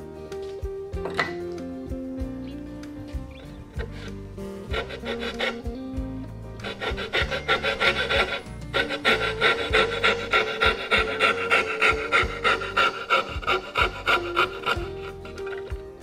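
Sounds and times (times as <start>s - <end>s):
background music with held notes: 0.0s - 16.0s
wood rasping strokes: 3.4s - 16.0s.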